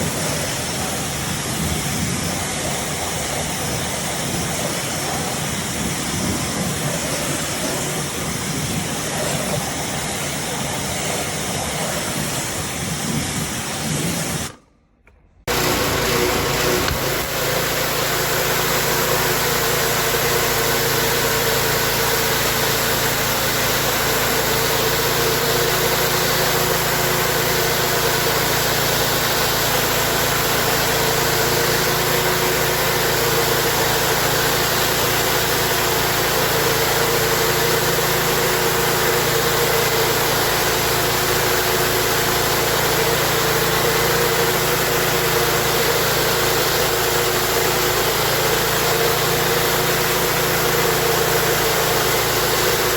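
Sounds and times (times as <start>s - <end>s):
water jet hissing: 0.0s - 14.6s, 15.5s - 52.9s
pressure washer engine hum: 0.0s - 52.9s.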